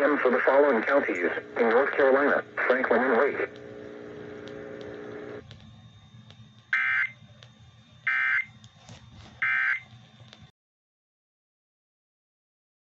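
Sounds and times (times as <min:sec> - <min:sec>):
low steady hum: 0:00.0 - 0:10.5
digital data tone bursts: 0:06.7 - 0:07.2, 0:08.0 - 0:08.5.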